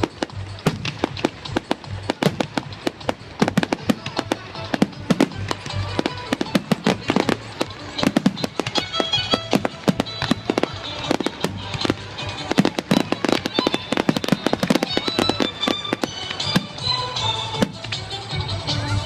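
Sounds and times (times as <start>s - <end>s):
fireworks bangs and crackles: 0.0s - 19.0s
music playing: 0.0s - 19.0s.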